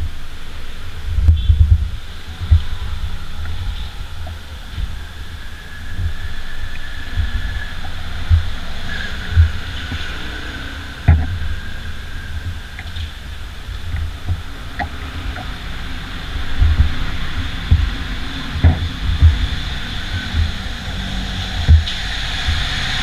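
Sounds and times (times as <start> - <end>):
stirrer knocking against can: 17.7 - 19.6.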